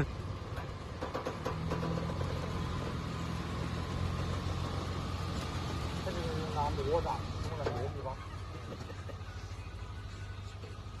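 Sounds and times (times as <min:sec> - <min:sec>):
suv engine idling: 0:00.0 - 0:11.0.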